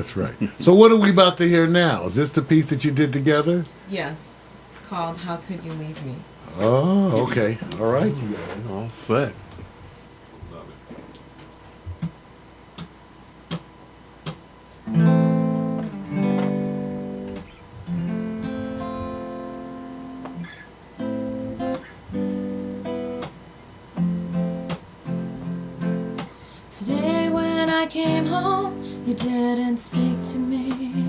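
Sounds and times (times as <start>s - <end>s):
acoustic guitar strumming: 14.3s - 31.0s.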